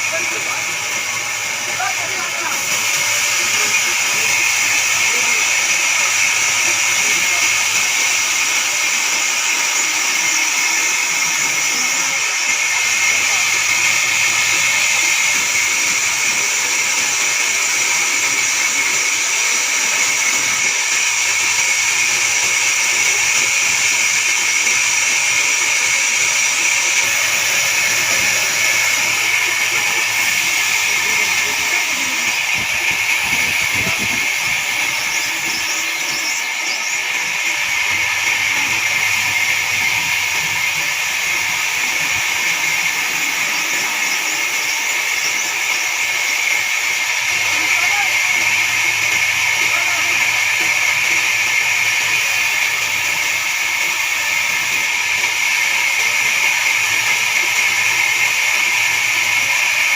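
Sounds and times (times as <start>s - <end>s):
band saw cutting log: 0.0s - 59.9s.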